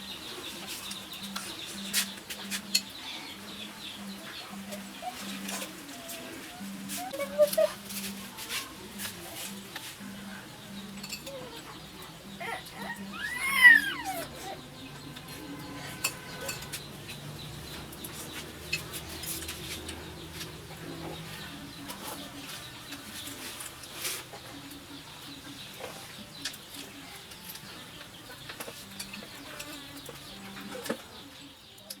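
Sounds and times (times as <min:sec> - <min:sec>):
chickens clucking: 0:00.0 - 0:32.0.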